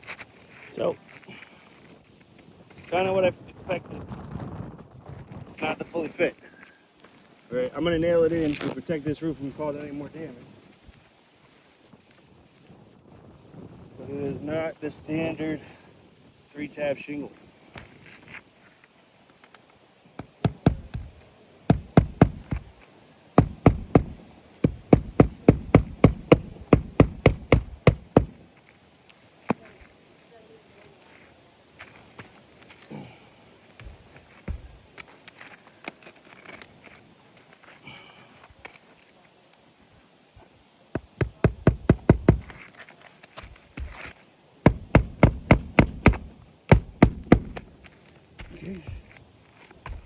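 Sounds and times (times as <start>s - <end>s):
hammer driving nails: 20.2s - 22.7s, 23.4s - 28.4s, 41.0s - 42.6s, 44.7s - 47.8s.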